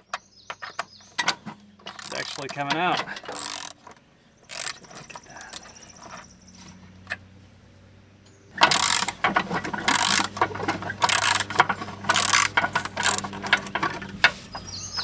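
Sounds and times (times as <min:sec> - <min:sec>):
ratchet wrench clicking: 0:01.9 - 0:06.2, 0:08.6 - 0:14.3.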